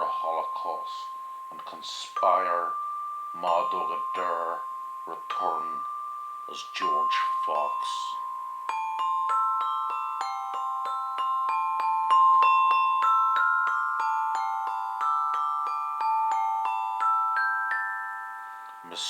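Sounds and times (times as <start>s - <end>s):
mallet notes on metal bars: 0.0s - 19.0s.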